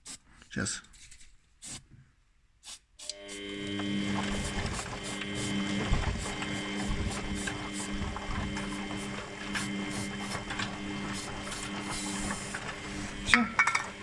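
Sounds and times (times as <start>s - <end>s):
washing machine motor humming: 3.0s - 14.0s.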